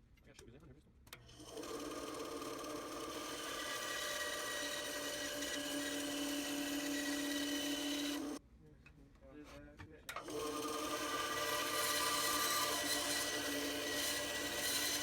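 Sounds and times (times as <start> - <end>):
power tool motor whining: 1.3 - 8.4, 10.2 - 15.0.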